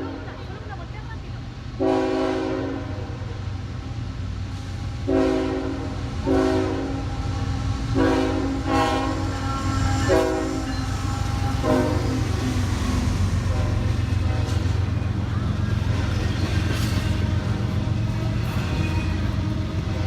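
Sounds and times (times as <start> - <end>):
low rumble of passing train: 0.0 - 20.0
locomotive air horn blasts: 1.8 - 3.2, 5.1 - 7.3, 7.9 - 12.4.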